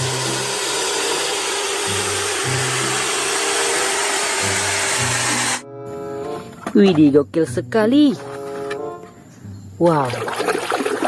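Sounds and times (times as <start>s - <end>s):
loud rushing hiss: 0.0s - 5.6s
slow low bass line music: 1.9s - 11.0s.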